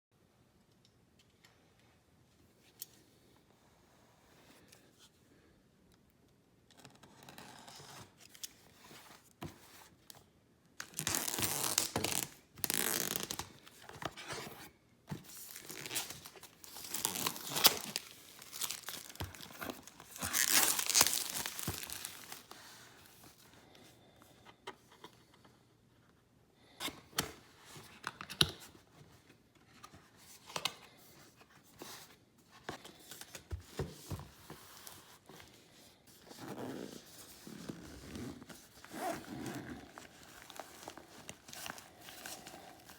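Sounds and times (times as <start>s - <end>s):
packaging ripping: 10.8s - 13.6s, 15.4s - 22.6s
packaging rustling: 10.8s - 23.3s, 36.4s - 42.9s.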